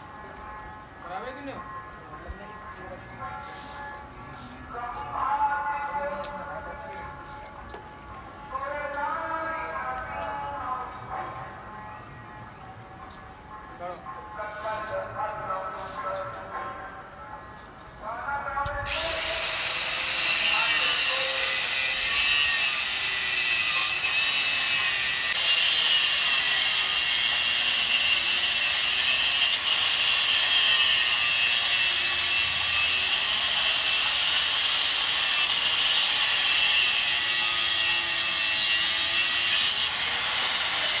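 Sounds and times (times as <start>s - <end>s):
power tool running with hiss: 18.9s - 41.0s.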